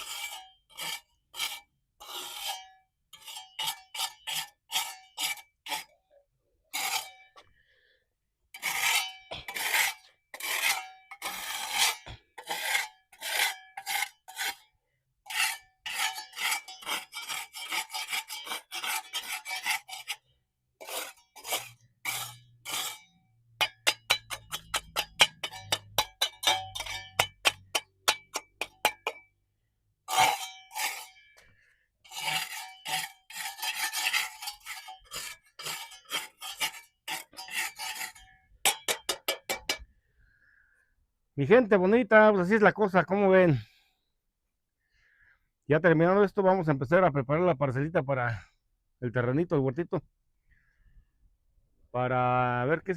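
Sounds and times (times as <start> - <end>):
hand scraping mortar on concrete: 0.0 - 29.4, 30.0 - 40.0.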